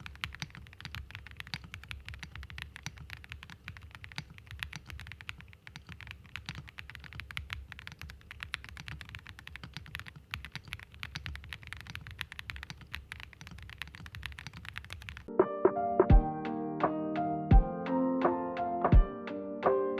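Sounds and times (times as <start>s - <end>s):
fast typing on mechanical keyboard: 0.0s - 15.3s.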